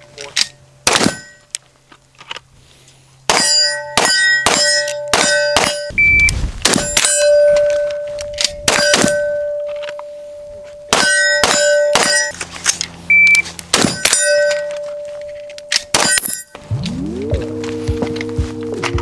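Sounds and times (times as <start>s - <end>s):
steel targets clanging: 0.2s - 1.6s, 3.3s - 16.7s
gunshots: 0.8s - 1.3s, 3.3s - 7.2s, 8.7s - 9.3s, 10.9s - 12.3s, 13.7s - 14.3s, 15.9s - 16.5s.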